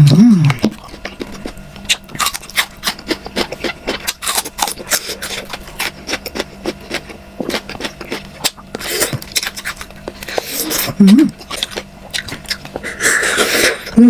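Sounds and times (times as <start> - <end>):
faint steady hum: 0.0 - 14.0
mouth chewing with smacks: 0.1 - 14.0.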